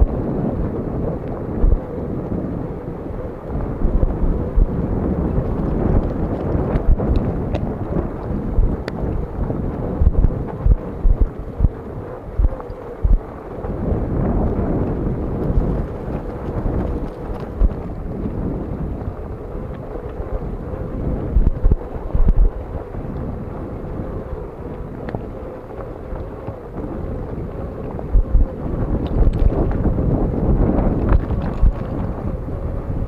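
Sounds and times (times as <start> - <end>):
faint steady hum: 0.0 - 33.0
wind buffeting microphone: 0.0 - 33.0
low thumps: 3.8 - 11.8, 12.4 - 13.2.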